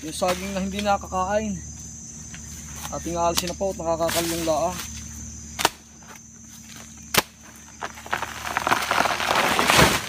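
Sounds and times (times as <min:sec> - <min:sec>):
leaves rustling and crackling: 0:06.4 - 0:10.0.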